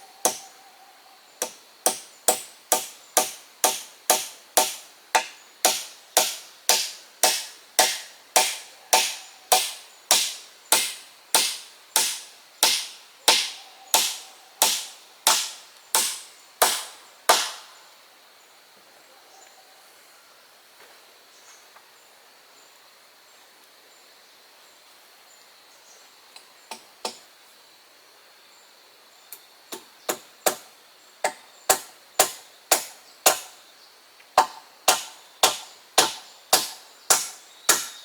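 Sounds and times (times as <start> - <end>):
hand tool striking wood: 1.4 - 17.7, 30.1 - 33.5, 34.4 - 38.0.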